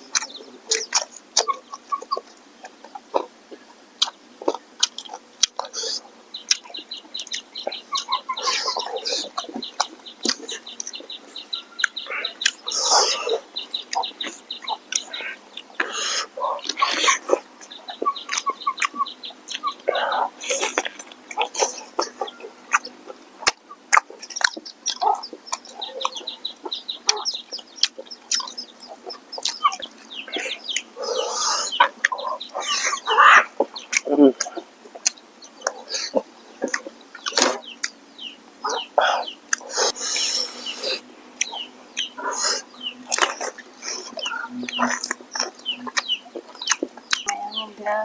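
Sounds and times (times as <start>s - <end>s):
chickens clucking: 0.0s - 48.0s
person chewing: 4.0s - 6.7s, 18.1s - 35.3s, 39.5s - 47.3s.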